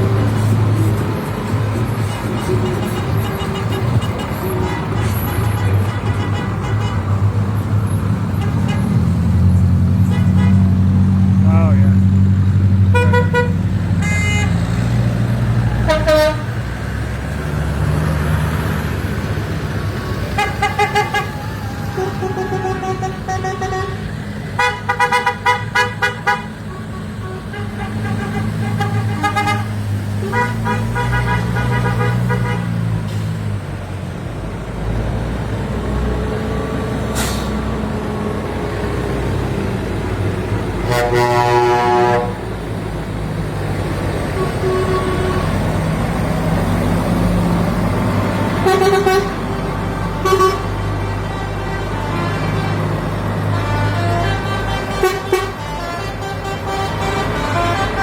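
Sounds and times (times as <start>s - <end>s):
tractor engines rumbling: 0.0s - 58.0s
horns tooting: 1.9s - 7.6s, 8.3s - 12.0s, 12.8s - 14.9s, 15.7s - 16.7s, 19.9s - 32.9s, 40.8s - 42.6s, 44.3s - 45.8s, 48.5s - 58.0s.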